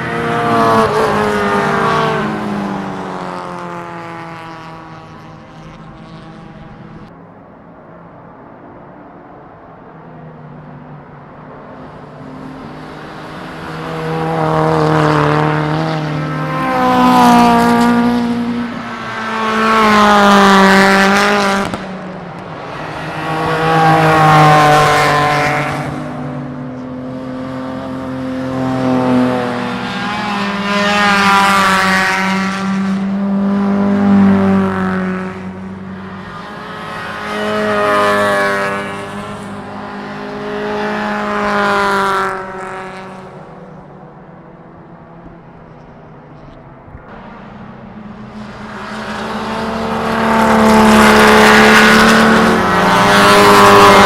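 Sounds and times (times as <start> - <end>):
racing cars passing at speed: 0.0 - 54.0.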